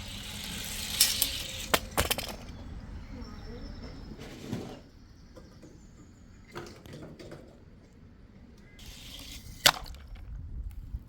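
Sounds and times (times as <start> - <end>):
toy cars knocking: 0.0 - 2.6.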